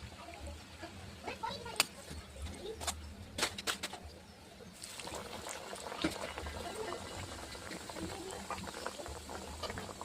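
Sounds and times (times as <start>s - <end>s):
food frying in hot oil: 0.0s - 10.0s.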